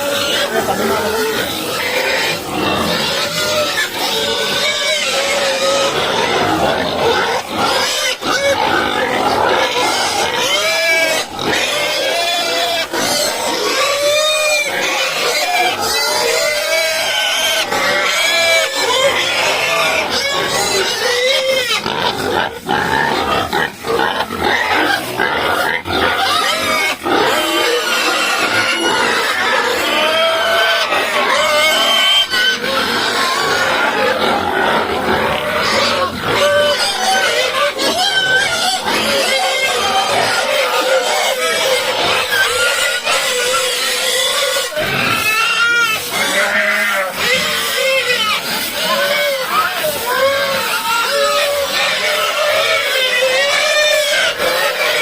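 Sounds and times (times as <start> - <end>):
pigs squealing and grunting: 0.0 - 55.0.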